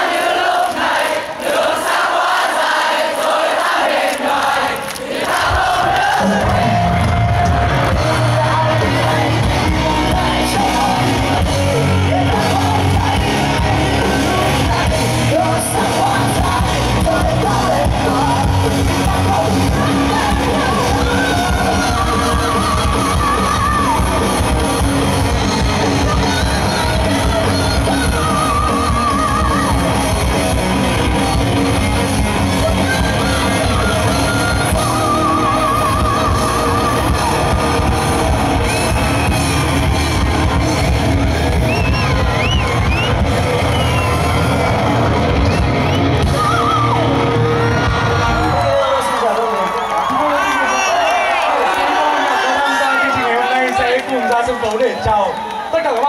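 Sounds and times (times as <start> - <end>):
rock band playing live: 5.5 - 50.0
person singing: 6.2 - 30.5, 32.4 - 39.3.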